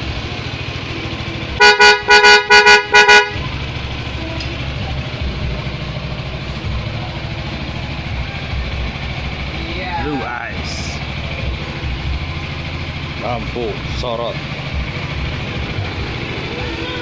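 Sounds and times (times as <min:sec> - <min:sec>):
motorcycle engine idling: 0:00.0 - 0:17.0
short horn toots: 0:01.6 - 0:03.4.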